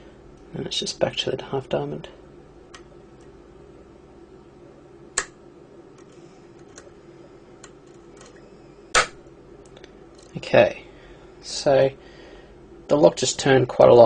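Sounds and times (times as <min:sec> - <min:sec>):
sharp click: 0:05.2 - 0:05.4.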